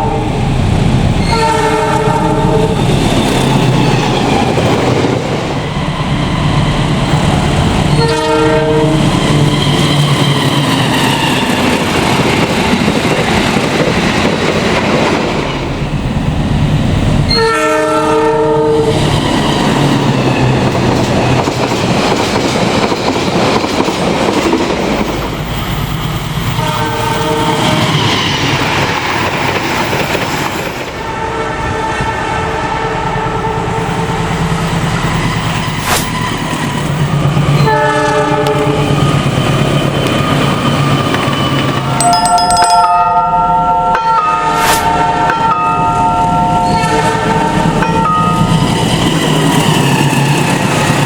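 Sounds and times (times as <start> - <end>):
train rumble and wheel clatter: 0.0 - 51.0
locomotive horn blasts: 1.2 - 2.8, 8.0 - 9.1, 17.3 - 18.9, 26.6 - 27.9, 37.6 - 38.9, 43.0 - 48.4.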